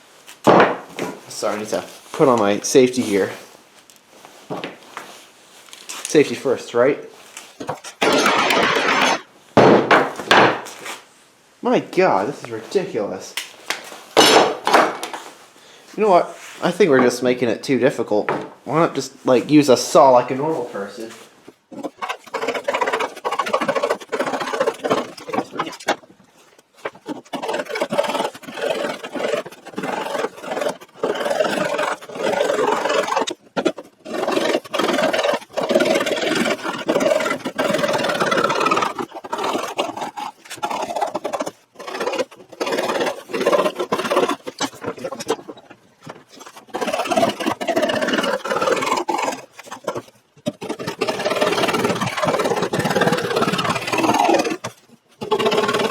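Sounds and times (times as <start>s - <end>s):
saw cutting through board: 7.6s - 9.3s, 21.7s - 50.1s, 50.7s - 55.9s.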